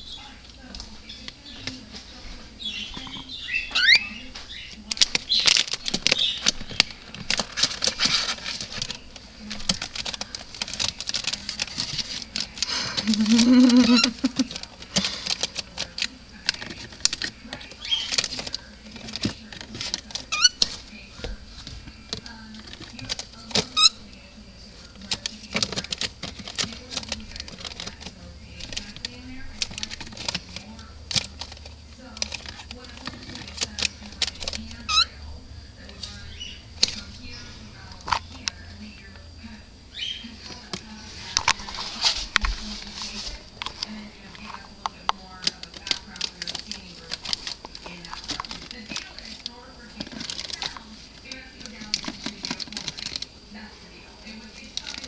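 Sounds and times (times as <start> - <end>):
claws and beak tapping scratching: 0.0 - 55.0
bird chirping: 2.6 - 6.8, 39.9 - 40.4.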